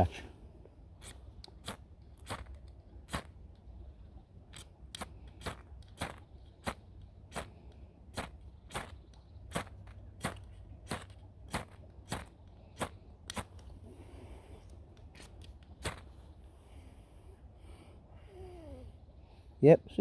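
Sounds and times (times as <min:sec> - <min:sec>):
fire striker scraping: 0:01.0 - 0:03.7, 0:04.5 - 0:13.7, 0:14.6 - 0:16.2.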